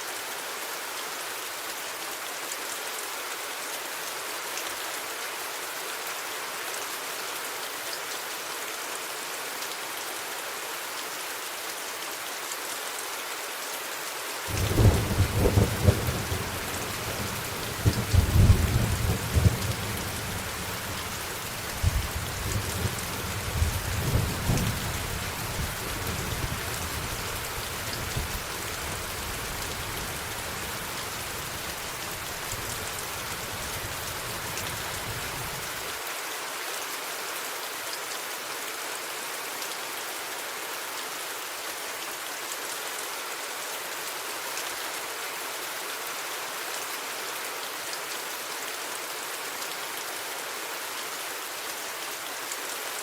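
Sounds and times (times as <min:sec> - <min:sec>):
steady rain: 0:00.0 - 0:53.0
thunder rumbling: 0:14.5 - 0:21.0.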